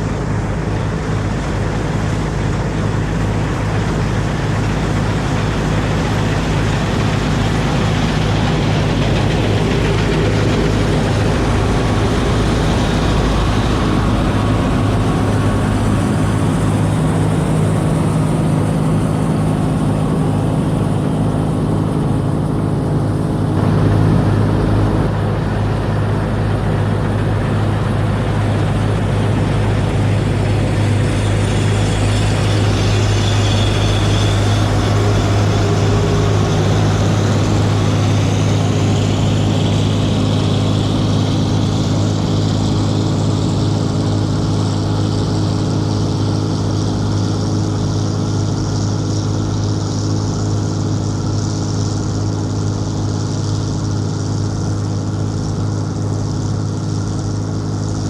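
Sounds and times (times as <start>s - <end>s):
combine harvester running: 0.0s - 58.0s.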